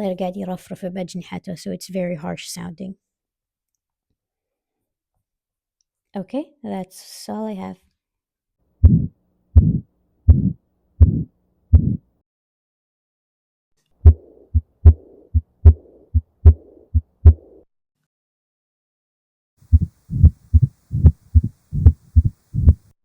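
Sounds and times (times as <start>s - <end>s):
heart murmur hissing: 8.8s - 12.0s, 14.0s - 17.6s, 19.7s - 23.0s
heartbeats through stethoscope: 8.8s - 12.0s, 14.0s - 17.6s, 19.7s - 23.0s.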